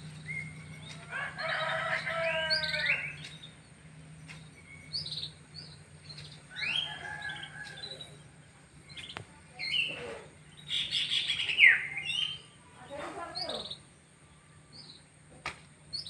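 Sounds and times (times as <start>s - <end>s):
canaries chirping and singing: 0.0s - 13.8s.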